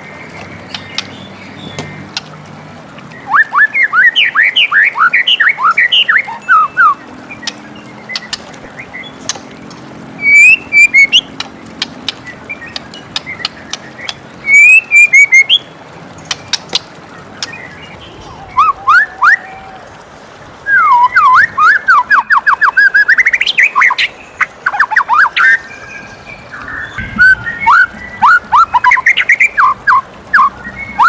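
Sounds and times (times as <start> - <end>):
bird singing whistled notes: 3.1 - 9.2, 10.2 - 11.3, 12.2 - 15.7, 20.6 - 31.0.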